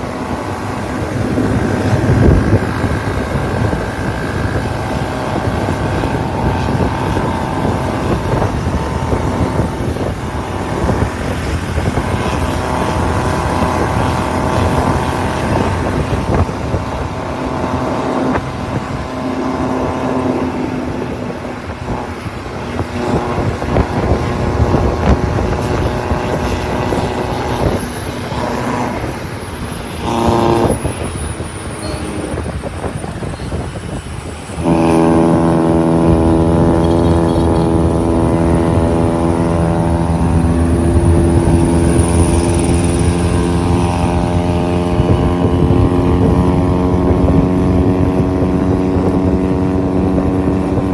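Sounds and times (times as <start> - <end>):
diesel engines running: 0.0 - 50.9
horn blast: 34.5 - 50.4.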